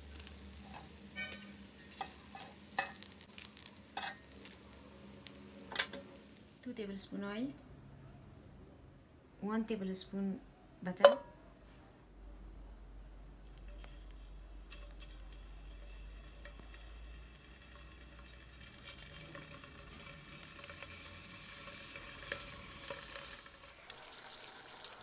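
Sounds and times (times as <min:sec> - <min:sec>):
meat sizzling in a skillet: 0:00.0 - 0:06.7, 0:13.6 - 0:25.0.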